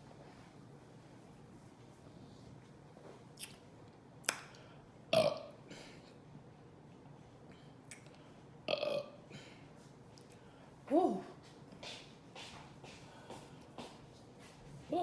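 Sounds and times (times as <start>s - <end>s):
woman burping: 5.1s - 5.6s, 8.7s - 9.2s.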